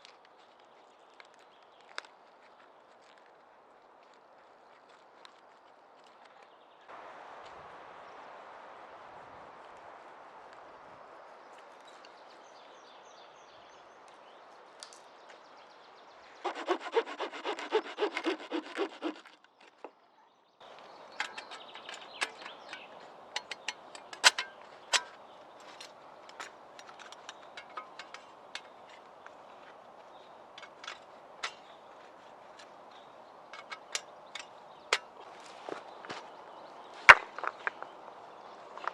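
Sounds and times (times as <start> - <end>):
hand saw cutting wood: 16.4 - 19.5.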